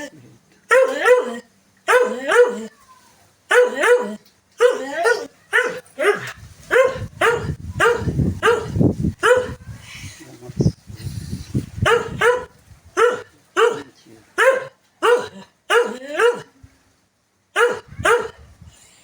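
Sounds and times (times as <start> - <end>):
dog barking: 0.7 - 2.7, 3.5 - 9.6, 11.8 - 16.5, 17.6 - 18.4.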